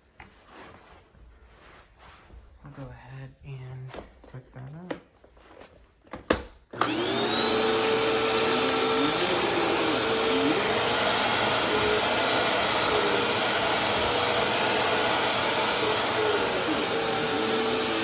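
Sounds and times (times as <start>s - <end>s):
vacuum cleaner motor whine: 6.8s - 18.0s.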